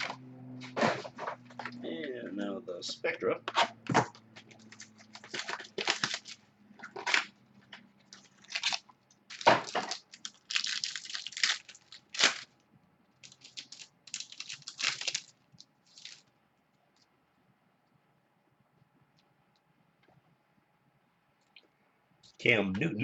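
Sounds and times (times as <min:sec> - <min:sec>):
packaging tearing and crinkling: 0:04.4 - 0:07.4, 0:08.0 - 0:12.6, 0:13.2 - 0:16.3.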